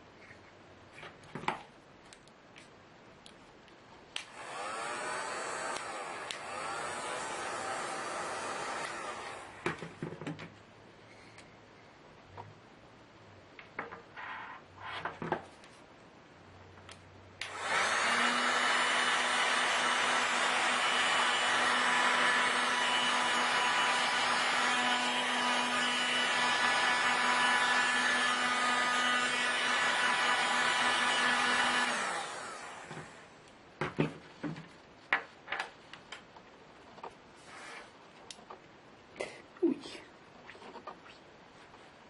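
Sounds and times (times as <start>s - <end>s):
small electric fans whirring: 2.0s - 11.7s, 16.8s - 38.8s.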